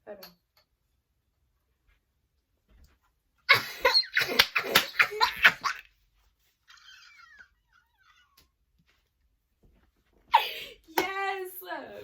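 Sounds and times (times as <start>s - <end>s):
girl laughing: 3.5s - 5.9s, 6.7s - 8.4s, 10.3s - 10.8s.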